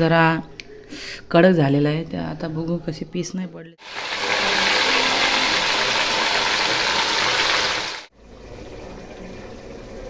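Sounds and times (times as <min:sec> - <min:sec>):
cheese sizzling in hot oil: 0:03.8 - 0:08.1.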